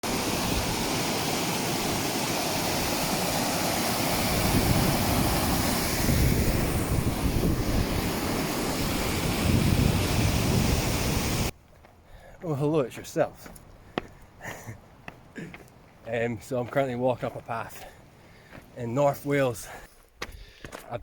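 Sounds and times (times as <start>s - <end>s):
wind buffeting microphone: 4.1s - 11.5s.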